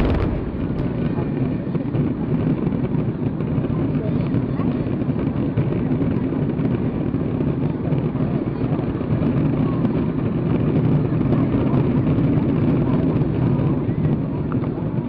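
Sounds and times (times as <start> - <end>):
faint crackles: 0.0 - 3.5
fireworks bursting: 0.0 - 3.6.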